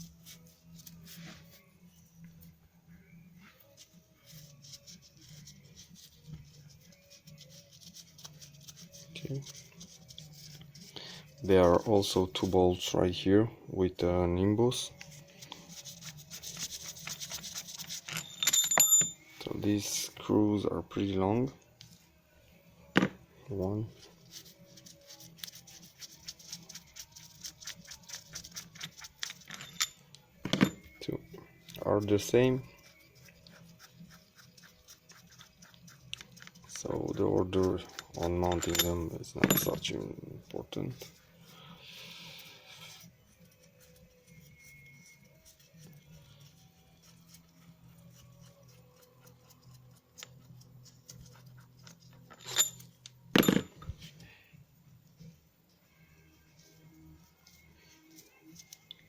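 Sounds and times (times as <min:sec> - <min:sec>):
ringing metal clinks: 0:18.1 - 0:19.3, 0:29.4 - 0:30.9, 0:38.4 - 0:39.9, 0:52.3 - 0:53.7.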